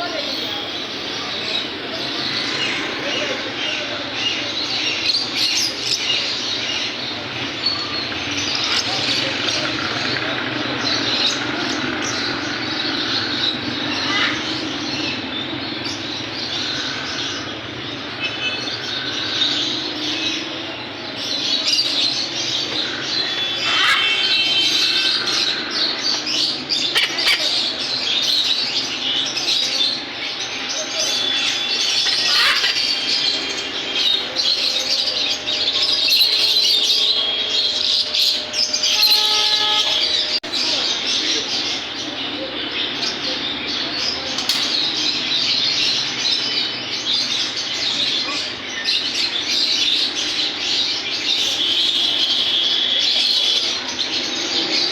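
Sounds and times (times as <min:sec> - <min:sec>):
caged birds chattering and squawking: 0:00.0 - 0:54.9
whistled bird notes: 0:21.4 - 0:42.0, 0:42.9 - 0:54.6.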